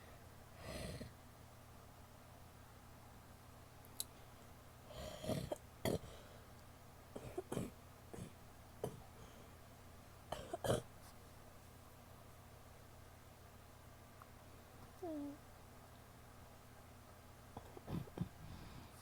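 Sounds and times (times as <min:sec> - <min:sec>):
woman coughing wetly: 0:17.8 - 0:18.4.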